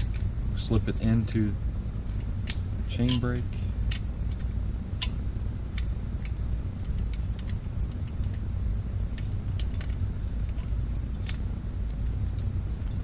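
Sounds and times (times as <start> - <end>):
low hum: 0.0 - 13.0
clicks of metal parts handled: 2.1 - 8.4, 9.1 - 12.9.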